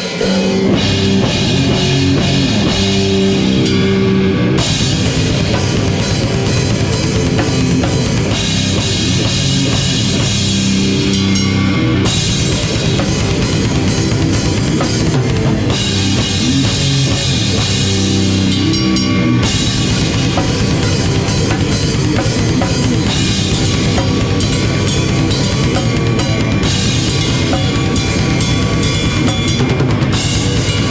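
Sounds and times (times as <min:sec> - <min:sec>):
crashing cymbals: 0:00.0 - 0:04.0
live rock band: 0:00.0 - 0:30.9
pounding bass drum: 0:00.0 - 0:30.9.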